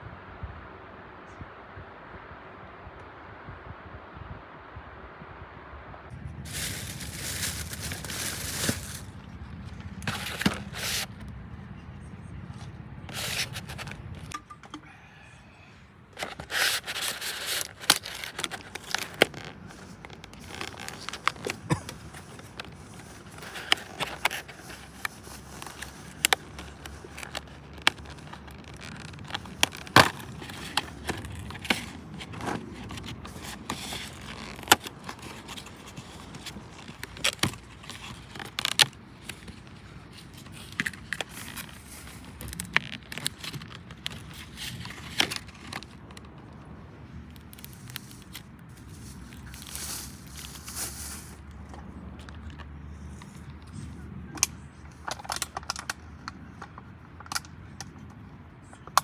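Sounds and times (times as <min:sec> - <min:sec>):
low rustling: 0:06.2 - 0:11.1.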